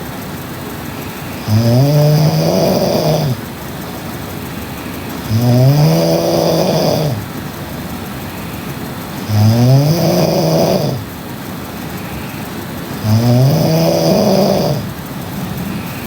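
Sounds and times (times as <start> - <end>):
woman snoring loudly: 1.1 - 3.5, 4.8 - 7.4, 8.3 - 11.1, 12.0 - 15.0.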